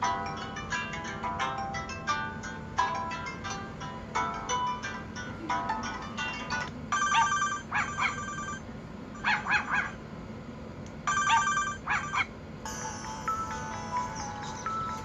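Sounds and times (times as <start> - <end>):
ringtone with held notes: 0.0 - 8.6, 11.1 - 15.0
electronic phone ringtone: 6.9 - 8.6, 11.1 - 15.0.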